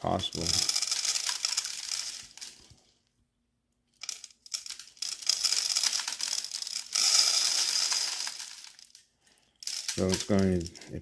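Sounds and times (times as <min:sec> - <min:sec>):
birdseed rattling in feeder: 0:04.0 - 0:08.8, 0:09.6 - 0:10.7.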